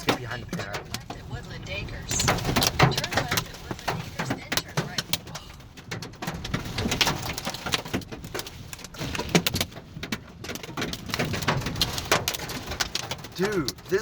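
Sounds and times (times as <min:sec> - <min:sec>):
steady low rumble: 0:00.0 - 0:06.8
hailstones hitting a car: 0:00.0 - 0:14.0.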